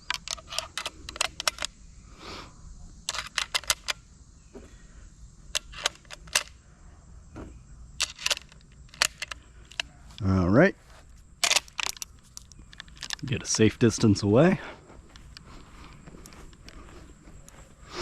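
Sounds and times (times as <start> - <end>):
rifle clicks while loading: 0.0 - 1.7, 3.1 - 4.0, 5.5 - 6.5, 8.0 - 9.9, 11.4 - 13.2.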